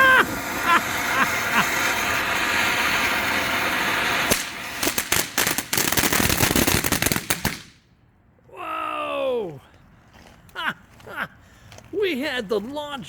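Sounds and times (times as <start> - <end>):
firework fountain hissing and crackling: 0.0 - 7.8.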